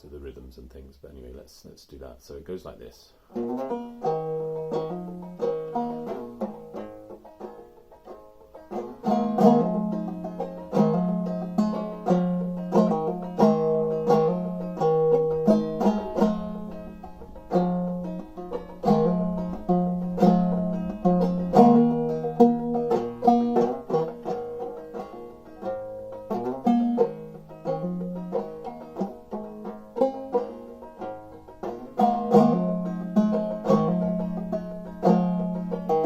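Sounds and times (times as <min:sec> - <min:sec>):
banjo playing: 0:00.0 - 0:01.4, 0:02.5 - 0:36.0.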